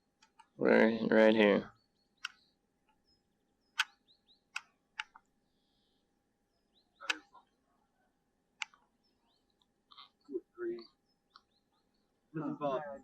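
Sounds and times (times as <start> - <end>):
sharp clicks: 0.2 - 0.6, 2.2 - 3.0, 3.7 - 5.3, 7.0 - 7.3, 8.6 - 8.8.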